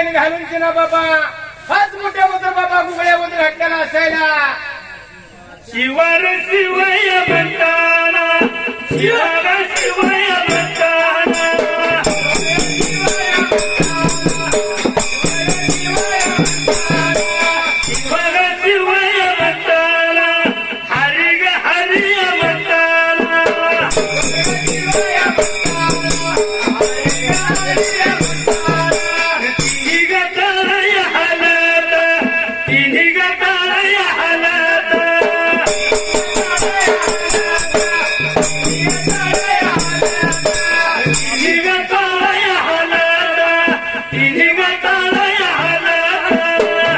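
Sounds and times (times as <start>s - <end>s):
man singing: 5.7s - 46.9s
rattling percussion beat: 8.4s - 19.7s, 21.9s - 31.1s, 35.2s - 42.5s
held instrumental chords: 23.9s - 30.1s.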